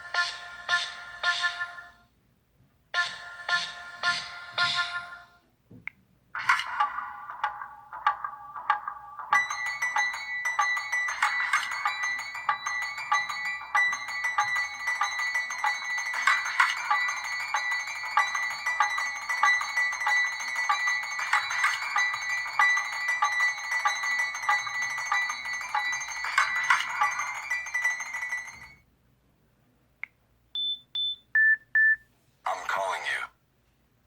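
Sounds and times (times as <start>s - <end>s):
electronic phone ringtone: 3.0s - 5.3s, 6.4s - 28.8s.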